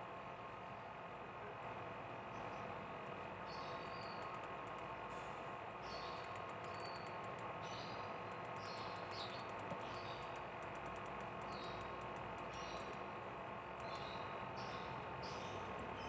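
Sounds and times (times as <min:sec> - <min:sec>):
faint high ticks: 0:04.0 - 0:04.9, 0:06.0 - 0:07.5, 0:08.3 - 0:13.0, 0:13.8 - 0:14.2.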